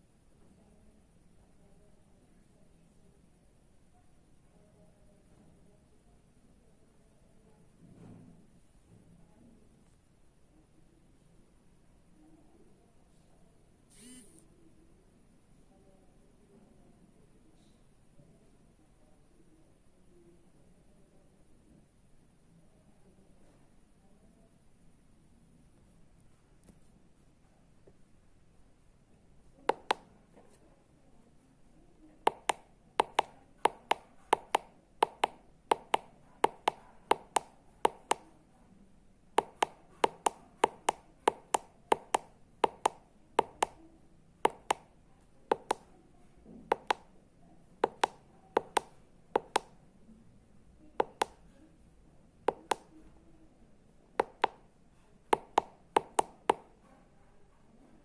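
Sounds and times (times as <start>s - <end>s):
push buttons clicking: 29.7s - 30.1s, 32.3s - 38.2s, 39.4s - 43.8s, 44.5s - 44.8s, 47.8s - 49.7s.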